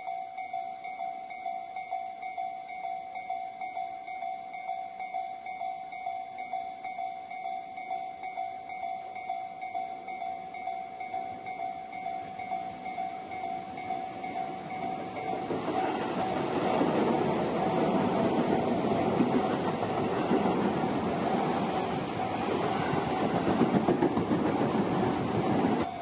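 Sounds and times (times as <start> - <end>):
level crossing bell clanging: 0.0 - 23.4
train wheels rumbling on rails: 11.1 - 26.0.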